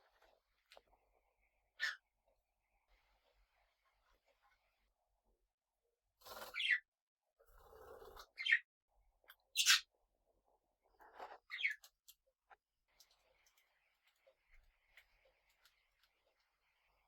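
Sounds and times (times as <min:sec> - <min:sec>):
parrots chirping: 0:09.6 - 0:09.8.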